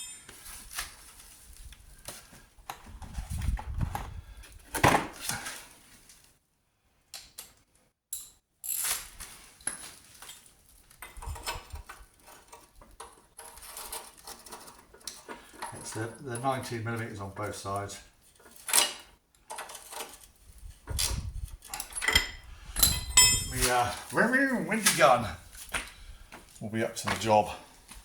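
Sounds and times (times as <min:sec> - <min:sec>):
spanners clinking on metal: 0:21.7 - 0:24.0.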